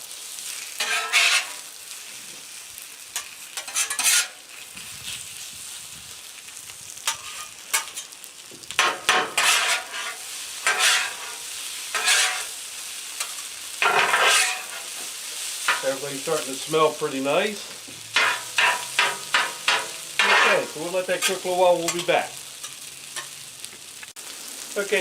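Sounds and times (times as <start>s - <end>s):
chicken sizzling on a griddle: 0.0s - 25.0s
metal spatula scraping: 0.7s - 1.7s, 3.2s - 4.5s, 7.0s - 8.2s, 8.8s - 12.6s, 13.2s - 23.4s.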